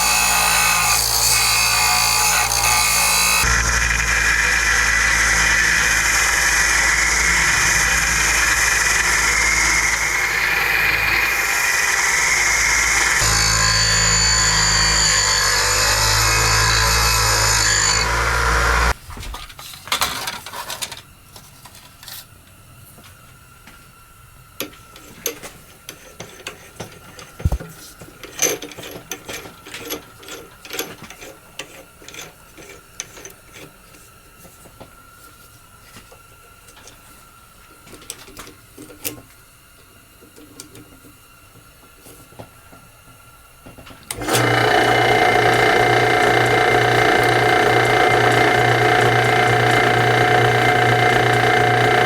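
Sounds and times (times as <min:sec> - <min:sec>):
drill bit cutting steel: 0:00.0 - 0:19.0, 0:44.1 - 0:52.0
drill press whining: 0:00.0 - 0:19.0, 0:44.1 - 0:52.0.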